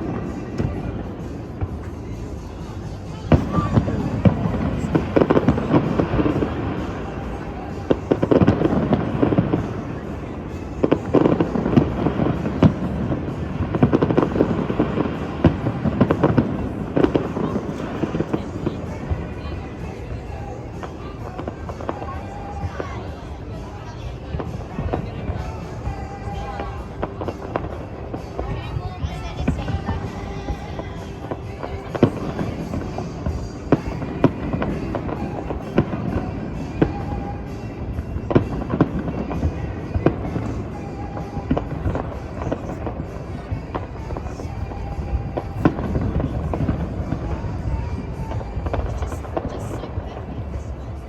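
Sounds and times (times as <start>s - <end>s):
firework bangs: 0.0s - 51.0s
fireworks crackling: 0.0s - 51.0s
music playing: 0.0s - 51.0s.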